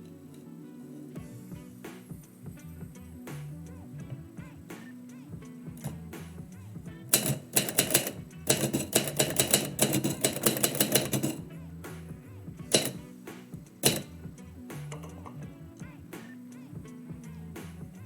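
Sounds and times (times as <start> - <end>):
background music: 0.0 - 18.0
typewriter keys striking: 7.1 - 11.4, 12.7 - 13.0, 13.8 - 14.1.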